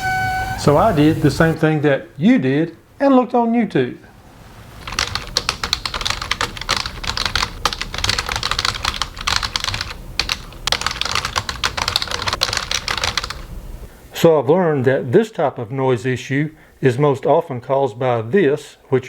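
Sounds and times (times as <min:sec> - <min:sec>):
rapid typing on keyboard: 0:04.8 - 0:13.5.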